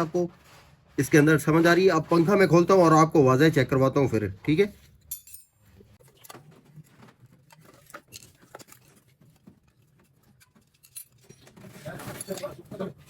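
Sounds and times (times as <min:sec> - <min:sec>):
tools and metal parts clicking: 0:04.9 - 0:06.4, 0:07.5 - 0:12.7.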